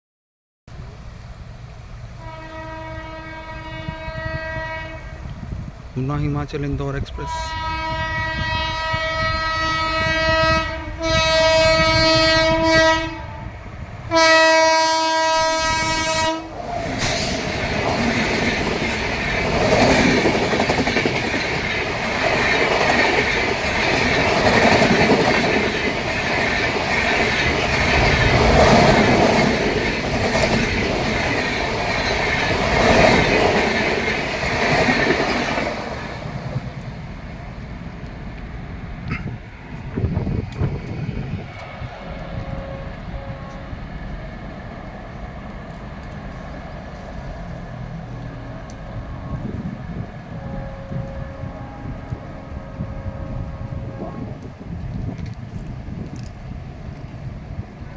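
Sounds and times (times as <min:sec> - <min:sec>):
locomotive horn blasts: 0:02.2 - 0:05.3, 0:07.2 - 0:13.5, 0:14.1 - 0:16.5, 0:42.0 - 0:43.9, 0:49.0 - 0:54.6
train wheels clattering: 0:15.7 - 0:42.5.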